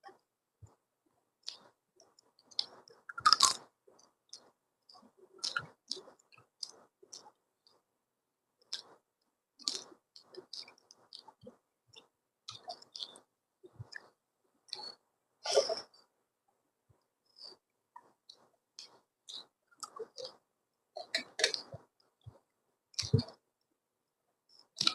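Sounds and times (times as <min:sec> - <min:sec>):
person chewing food: 0:01.4 - 0:07.8, 0:08.6 - 0:09.0, 0:09.6 - 0:16.0, 0:17.3 - 0:20.4, 0:21.0 - 0:23.4.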